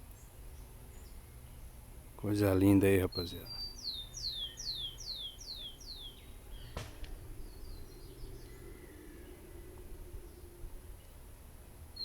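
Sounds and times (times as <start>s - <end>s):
faint bird chirps: 3.0s - 12.0s
songbird whistles: 3.5s - 10.6s.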